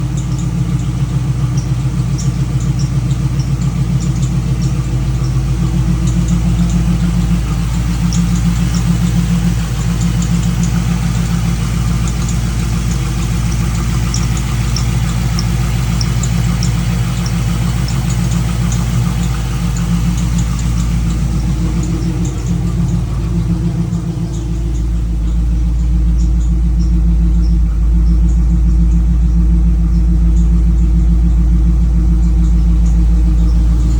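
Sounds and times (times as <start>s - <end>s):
engine idling rumble: 0.0s - 33.9s.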